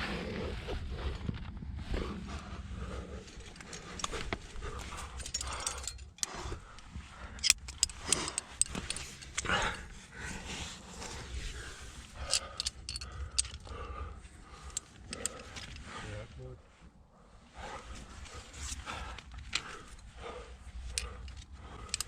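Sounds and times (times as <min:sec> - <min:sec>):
person breathing heavily: 0:02.0 - 0:16.4, 0:17.0 - 0:22.0
metal climbing gear clinking: 0:03.2 - 0:10.2, 0:10.9 - 0:16.0, 0:18.5 - 0:22.0
grunts of effort: 0:09.4 - 0:10.2.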